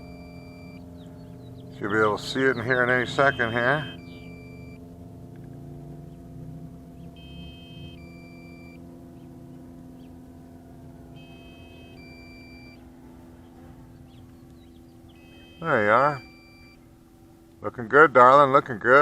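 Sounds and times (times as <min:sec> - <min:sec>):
electronic warning beeps: 0:00.0 - 0:00.9, 0:01.8 - 0:04.8, 0:07.1 - 0:08.8, 0:11.1 - 0:12.9, 0:14.0 - 0:17.4
steady low hum: 0:00.0 - 0:19.0.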